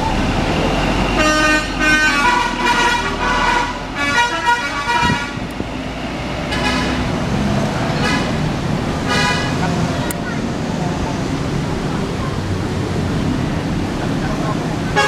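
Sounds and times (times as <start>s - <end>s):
bus engine idling: 0.0s - 15.0s
multi-tone musical bus horn: 1.0s - 5.6s, 6.5s - 7.3s, 7.9s - 9.7s.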